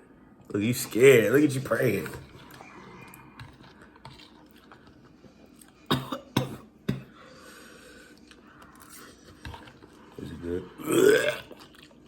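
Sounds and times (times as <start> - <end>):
person coughing: 5.9 - 7.2.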